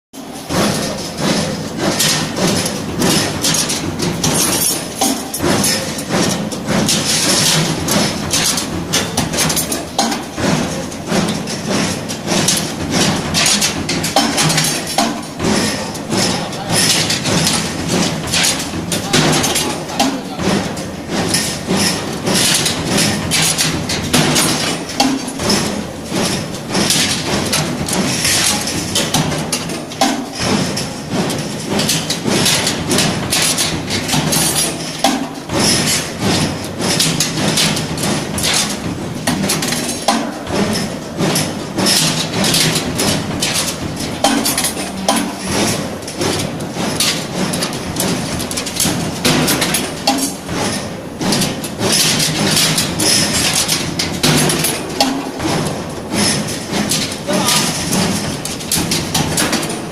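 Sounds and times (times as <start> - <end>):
bar bending machine clattering: 0.2 - 59.9.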